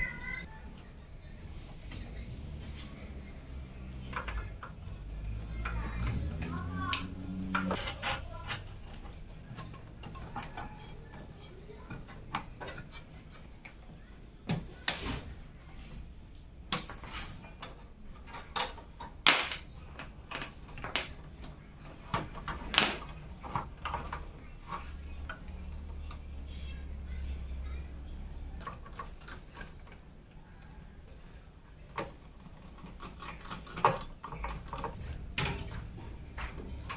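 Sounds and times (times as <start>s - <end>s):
computer parts clicking and knocking: 31.9s - 36.9s.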